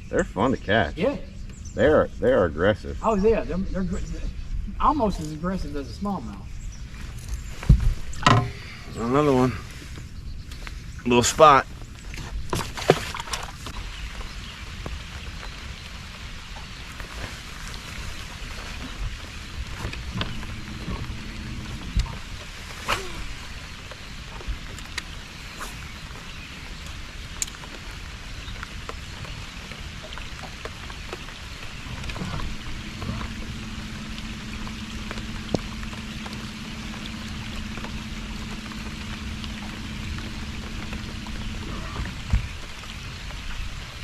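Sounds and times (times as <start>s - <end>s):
rain-like hiss: 0.0s - 44.0s
steady low hum: 19.2s - 24.3s, 30.6s - 44.0s.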